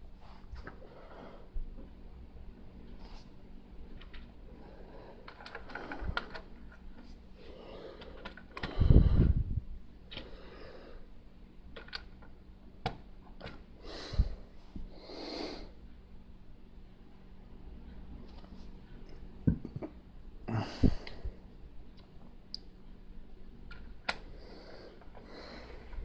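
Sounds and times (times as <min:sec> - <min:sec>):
plastic bricks clicking and rustling: 0:05.2 - 0:06.8, 0:08.0 - 0:08.7, 0:11.7 - 0:12.3.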